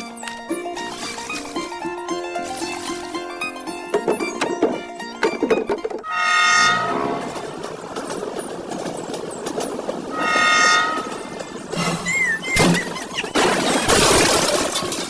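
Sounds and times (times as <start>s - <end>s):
passing train rumble and clatter: 0.0s - 15.0s
train horn blasts: 6.0s - 7.6s, 10.1s - 11.5s
wavering whistle: 10.1s - 12.9s.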